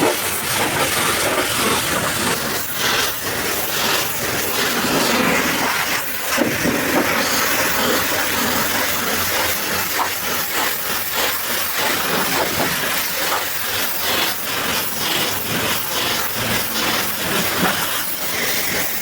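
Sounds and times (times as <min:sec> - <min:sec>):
pressure washer spraying water: 0:00.0 - 0:19.0.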